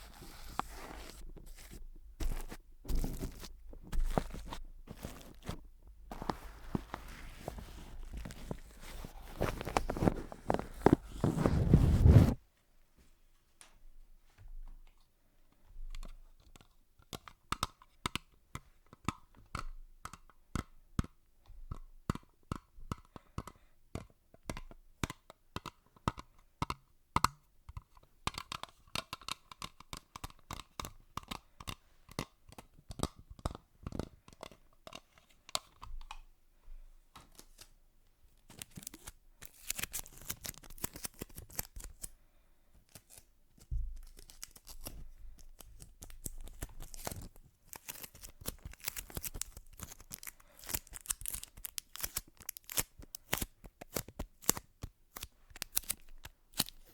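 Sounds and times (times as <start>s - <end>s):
scratchy rustle: 0.0s - 12.4s.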